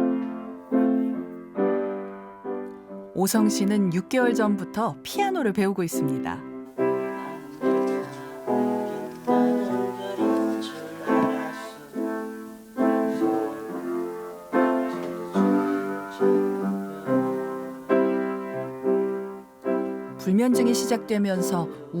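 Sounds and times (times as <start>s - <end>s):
piano slow chords: 0.0s - 3.2s, 6.5s - 22.0s.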